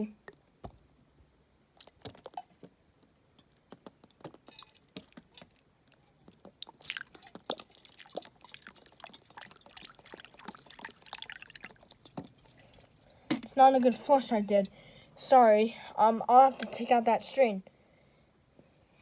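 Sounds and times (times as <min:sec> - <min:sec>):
water trickling and dripping: 0:00.2 - 0:14.0.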